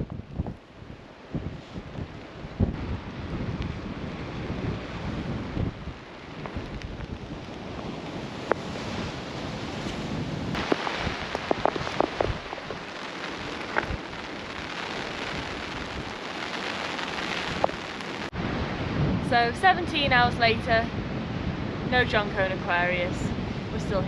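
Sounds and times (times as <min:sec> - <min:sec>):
wind and rain rushing: 0:00.0 - 0:24.0.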